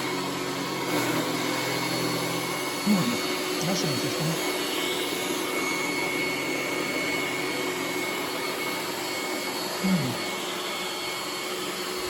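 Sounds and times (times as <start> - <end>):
robot vacuum running: 0.0 - 12.0.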